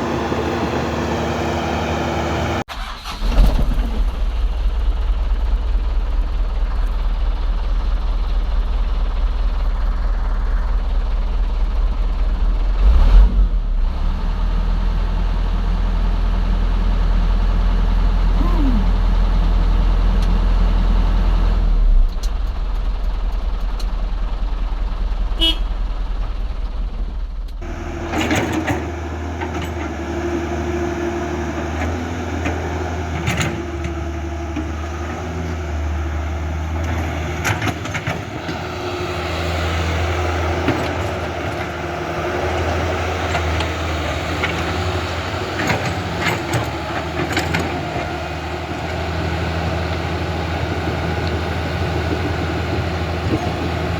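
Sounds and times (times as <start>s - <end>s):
clicks and clatter: 27.4s - 30.0s, 31.8s - 34.0s, 36.8s - 38.6s, 45.5s - 48.1s.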